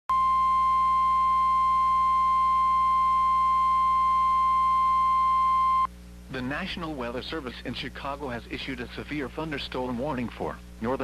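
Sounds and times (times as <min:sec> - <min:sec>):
steady high warning tone: 0:00.1 - 0:05.9.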